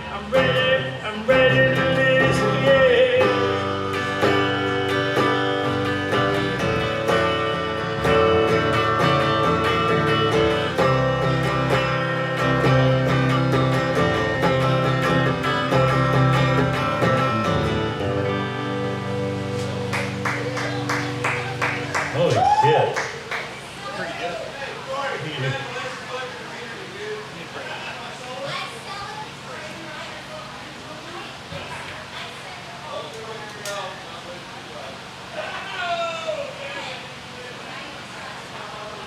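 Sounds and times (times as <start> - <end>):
acoustic guitar strummed and picked: 0.0 - 24.0.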